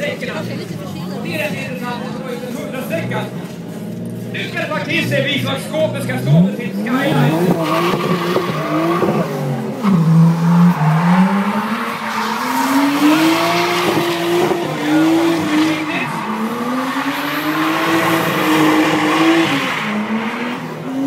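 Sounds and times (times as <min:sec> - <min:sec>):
car engine revving: 0:00.0 - 0:21.0
spinning tyres squealing: 0:01.4 - 0:21.0.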